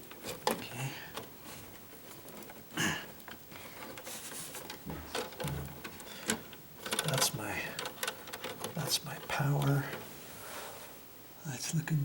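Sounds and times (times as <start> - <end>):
wires scraping and rustling: 0.0 - 11.1.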